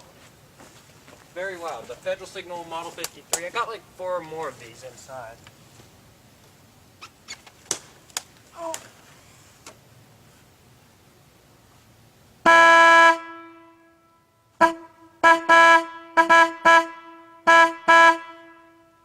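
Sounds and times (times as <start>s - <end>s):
horn blasts: 12.4s - 19.0s.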